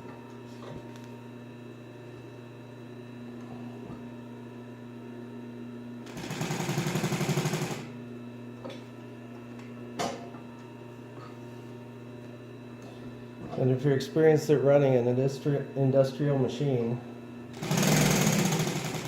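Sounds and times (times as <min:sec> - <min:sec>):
sewing machine motor humming: 0:06.0 - 0:07.9, 0:17.5 - 0:19.0
rapid sewing machine stitching: 0:06.1 - 0:07.9, 0:17.6 - 0:19.0.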